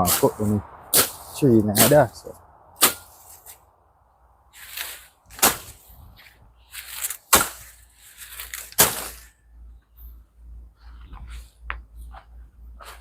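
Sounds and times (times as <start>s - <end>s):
blade chopping weeds: 0.0s - 2.1s, 2.8s - 3.6s, 4.6s - 5.9s, 6.7s - 9.3s
vegetation swishing rustle: 4.5s - 9.3s.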